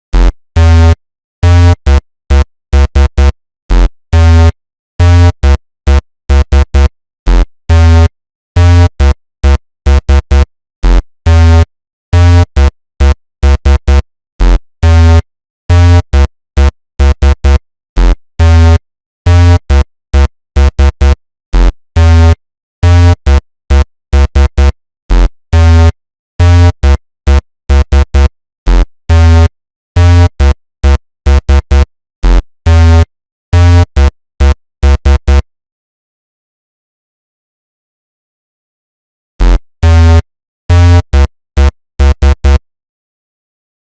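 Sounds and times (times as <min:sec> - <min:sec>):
pulsing electronic buzz: 0:33.6 - 0:35.4, 0:39.4 - 0:42.6.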